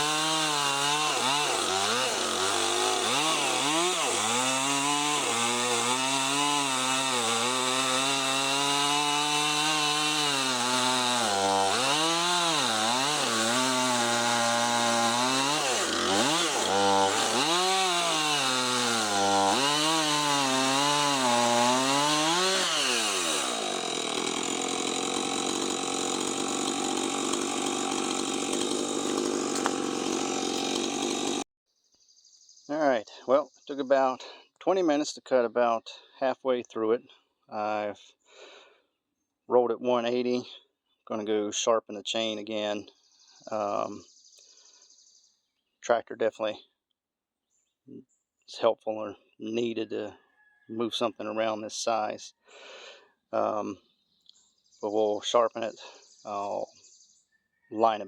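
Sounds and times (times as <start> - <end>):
chainsaw cutting through log: 0.0 - 31.5.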